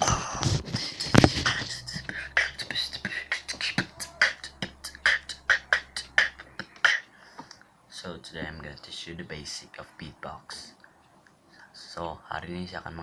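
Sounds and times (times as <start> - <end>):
beatboxing: 0.0 - 7.2.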